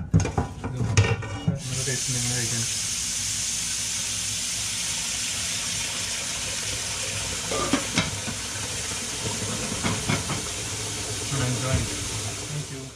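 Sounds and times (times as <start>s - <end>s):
steady high hiss: 1.6s - 5.4s.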